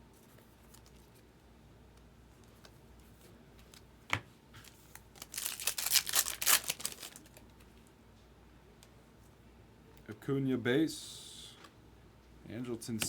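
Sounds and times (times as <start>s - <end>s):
card pack wrapper tearing and crinkling: 4.6s - 7.4s.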